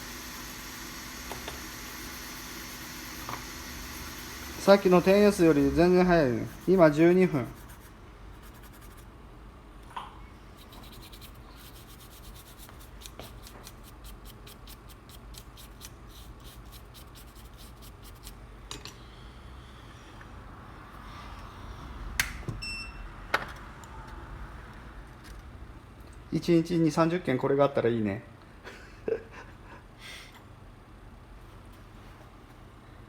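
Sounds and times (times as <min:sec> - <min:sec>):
steady low hum: 0:00.0 - 0:27.4
tools scratching and rubbing: 0:04.7 - 0:09.1, 0:10.6 - 0:18.4.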